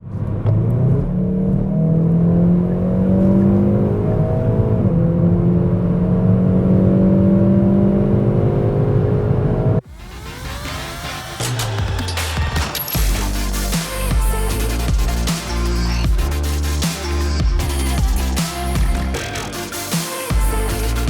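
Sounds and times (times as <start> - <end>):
car engine accelerating hard: 0.1 - 9.8.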